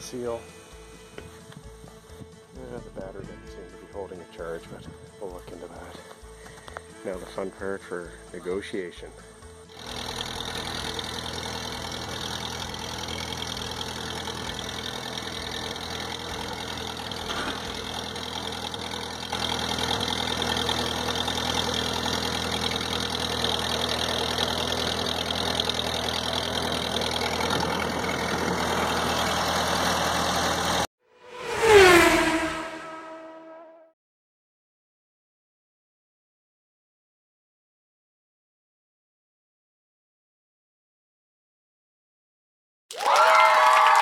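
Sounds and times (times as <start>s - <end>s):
tractor engine running: 0.0s - 3.2s, 4.6s - 33.2s
loud falling tone: 31.2s - 33.9s.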